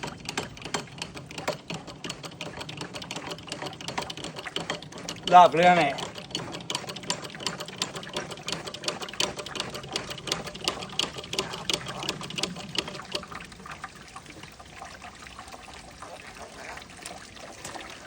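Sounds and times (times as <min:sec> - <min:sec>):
rapid clicking and crackling: 0:00.0 - 0:14.5
liquid trickling: 0:00.0 - 0:18.0.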